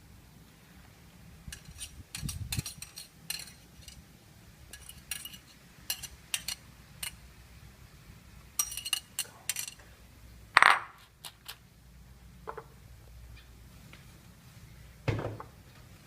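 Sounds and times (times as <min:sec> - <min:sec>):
utensils clinking against dishes: 0:01.5 - 0:04.0, 0:04.7 - 0:07.2, 0:08.6 - 0:09.8.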